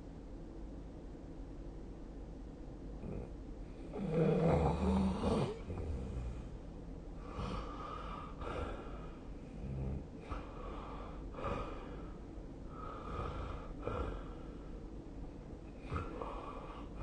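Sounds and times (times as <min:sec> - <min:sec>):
person snoring: 0:03.0 - 0:03.3, 0:03.9 - 0:06.6, 0:07.2 - 0:12.1, 0:15.8 - 0:17.0
quiet breaths: 0:03.0 - 0:17.0.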